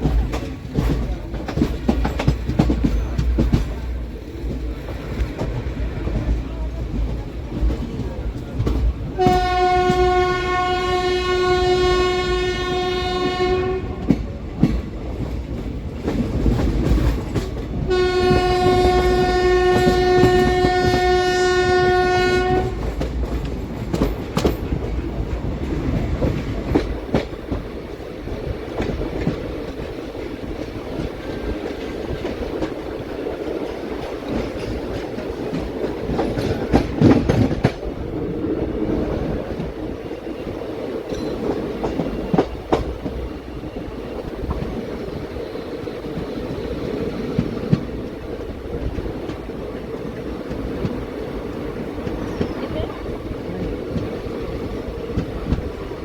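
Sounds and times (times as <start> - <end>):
train coach rumbling: 0.0 - 56.0
train horn blasts: 9.1 - 14.2, 17.9 - 23.0.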